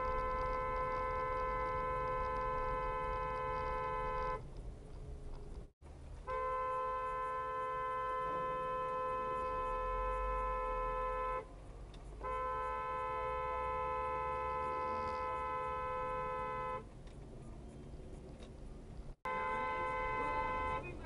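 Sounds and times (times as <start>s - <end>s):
vehicle horn blasts: 0.0s - 4.4s, 6.2s - 11.5s, 12.2s - 16.9s, 19.2s - 21.0s.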